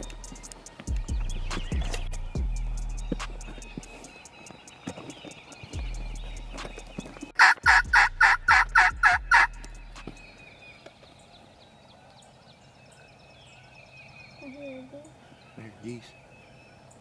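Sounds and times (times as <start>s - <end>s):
turkey yelps: 7.4s - 10.0s.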